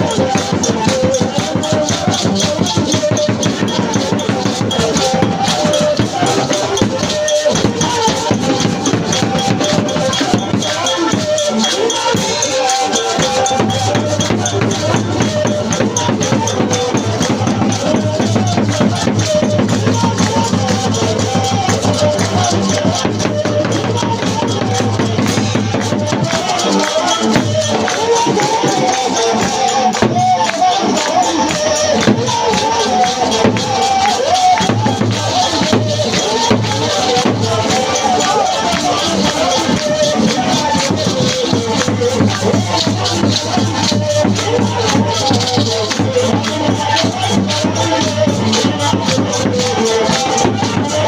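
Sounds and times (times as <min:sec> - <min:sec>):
drums and shakers: 0:00.0 - 0:51.0
voices singing: 0:00.0 - 0:51.0.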